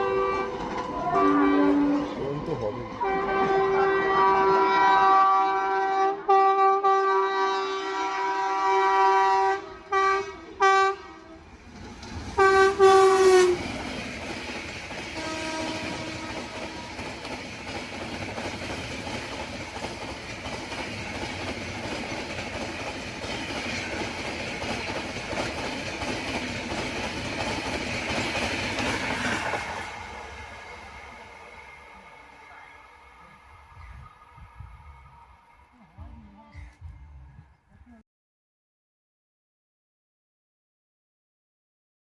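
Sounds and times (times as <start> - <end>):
train wheel clatter: 0.0 - 4.7, 11.6 - 32.7
locomotive horn blasts: 0.0 - 11.4, 12.4 - 13.7, 15.2 - 17.1.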